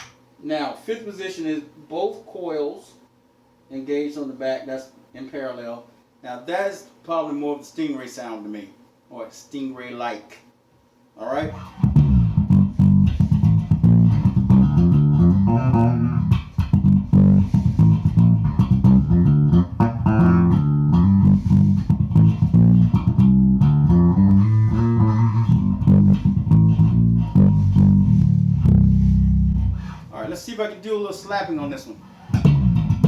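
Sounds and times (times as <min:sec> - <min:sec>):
electric bass plucked notes: 0:11.4 - 0:30.0, 0:32.3 - 0:33.0.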